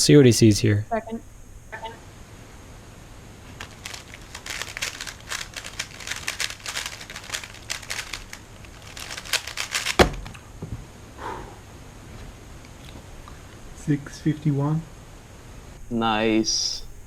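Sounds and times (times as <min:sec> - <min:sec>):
plastic cube clicking: 0:03.9 - 0:10.4.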